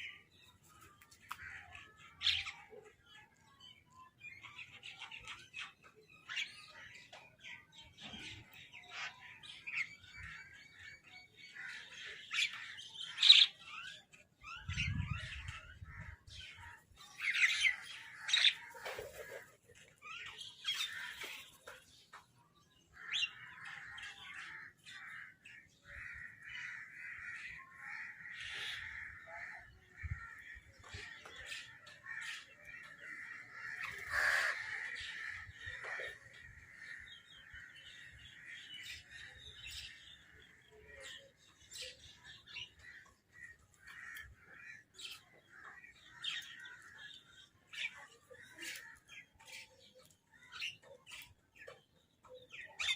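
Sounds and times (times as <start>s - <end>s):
birds chirping: 0.0s - 52.9s
crows cawing: 23.0s - 30.7s, 32.0s - 37.8s, 42.8s - 47.1s.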